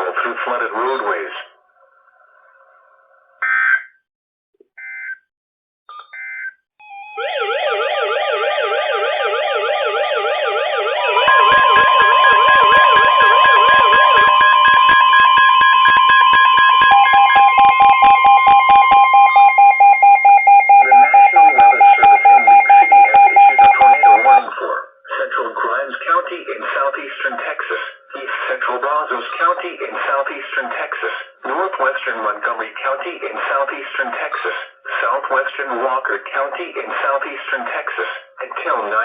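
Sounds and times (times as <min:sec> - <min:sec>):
steady alarm tone: 0:06.8 - 0:24.4
fast warbling alarm sweep: 0:06.8 - 0:24.5
rapid pulsing beeps: 0:11.2 - 0:24.4.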